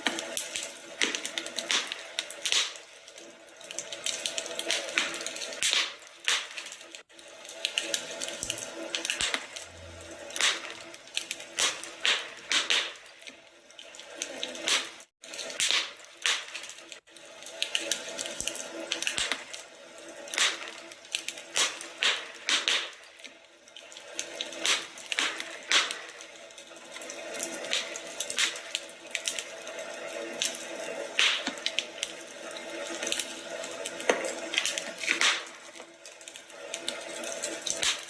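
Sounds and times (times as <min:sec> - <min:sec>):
wood fire crackling and popping: 0:00.0 - 0:38.0.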